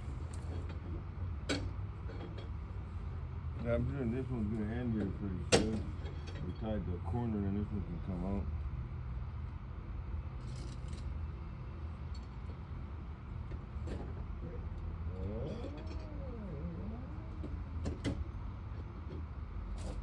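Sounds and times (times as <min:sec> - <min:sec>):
low engine rumble: 0:11.3 - 0:20.0.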